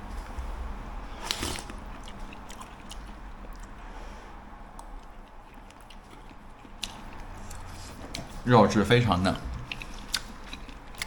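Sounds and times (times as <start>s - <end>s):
person chewing: 1.2s - 3.8s, 4.8s - 8.3s, 9.4s - 11.0s.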